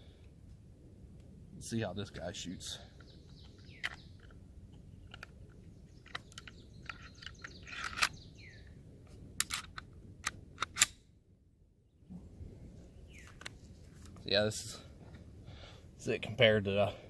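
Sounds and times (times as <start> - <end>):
pistol handling clicks and knocks: 3.0 - 8.2, 9.4 - 11.0.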